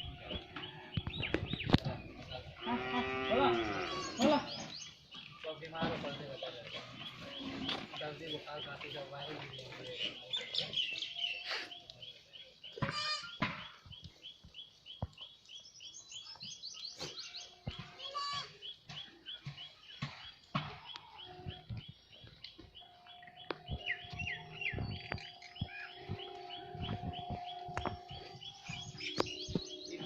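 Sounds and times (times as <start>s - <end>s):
small birds chirping: 0.0s - 30.0s
trilled bird calls: 16.9s - 30.0s.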